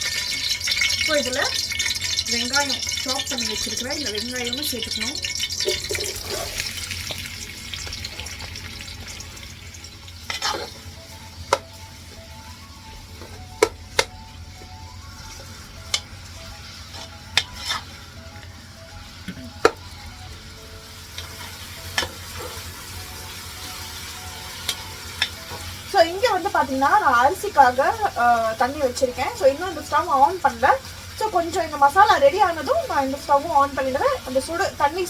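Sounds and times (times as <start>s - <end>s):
onions sizzling in hot oil: 0.0s - 35.0s
spoon knocking against pan: 11.5s - 11.7s, 13.2s - 14.2s.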